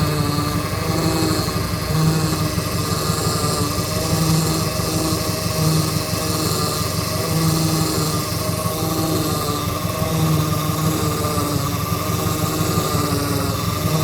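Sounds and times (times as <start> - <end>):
car engine idling: 0.0 - 14.0
power steering pump hum: 0.0 - 14.0.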